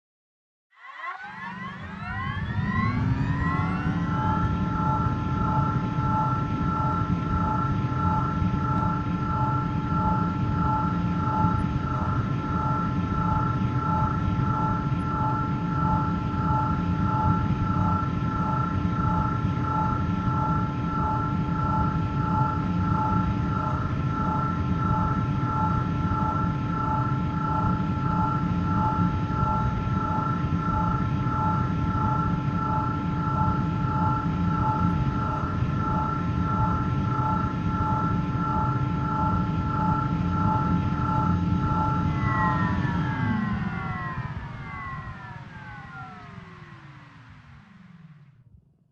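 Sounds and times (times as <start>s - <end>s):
pulsing high tones: 0.8s - 17.2s, 39.2s - 48.4s
hover engine whine: 0.8s - 48.7s
constant hum: 0.9s - 48.6s
low rumble: 39.2s - 48.4s.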